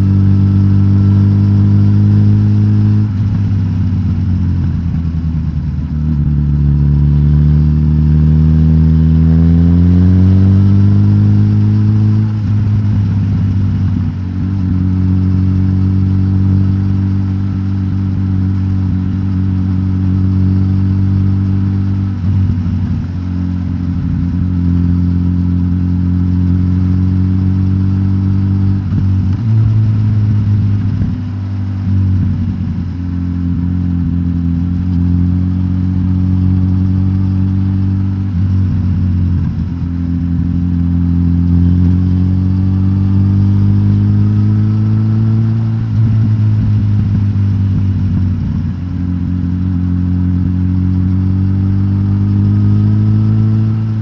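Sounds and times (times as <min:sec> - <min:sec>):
motorcycle engine running: 0:00.0 - 0:54.0.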